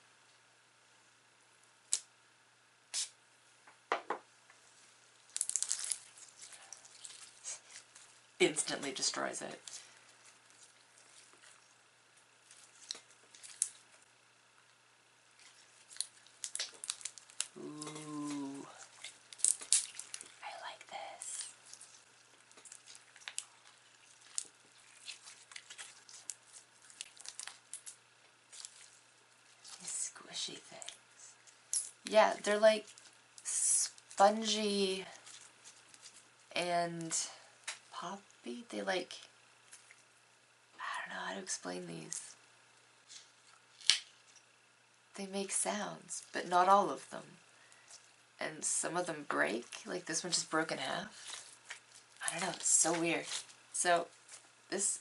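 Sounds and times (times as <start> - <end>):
slime squishing and popping: 5.3 - 7.9, 15.4 - 20.4, 21.4 - 29.0.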